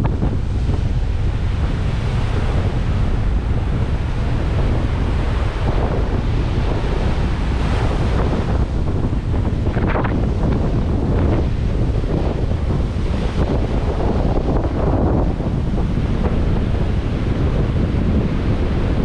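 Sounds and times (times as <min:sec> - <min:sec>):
storm surf breaking: 0:00.0 - 0:19.0
wind buffeting microphone: 0:00.0 - 0:19.0.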